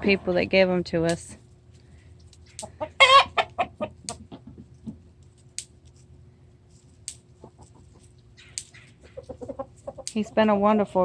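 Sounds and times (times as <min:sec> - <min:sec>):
chickens clucking: 0:00.0 - 0:00.9, 0:02.3 - 0:05.2, 0:07.0 - 0:11.0.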